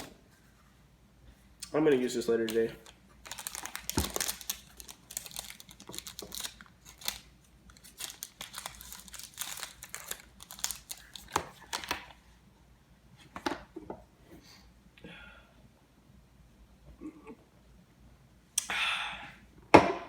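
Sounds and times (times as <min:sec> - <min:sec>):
packaging crinkling and rustling: 0:01.9 - 0:12.2.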